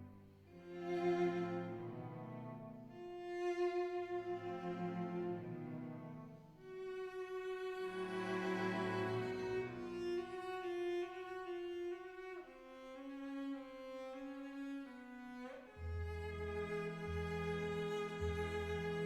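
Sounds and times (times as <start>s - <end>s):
slow bowed-string music: 0.0s - 19.0s
low repeated bass notes: 15.8s - 19.0s.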